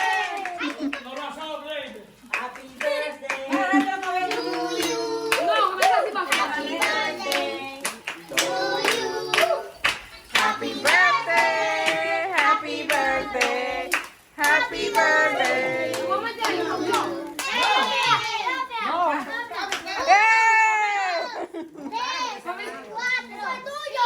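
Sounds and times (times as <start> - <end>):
people clapping: 0.0 - 21.4
group singing: 2.3 - 18.6.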